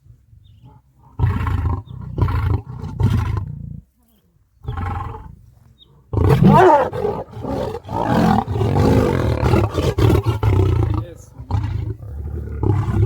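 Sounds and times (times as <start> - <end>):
lion roaring: 6.1 - 13.0.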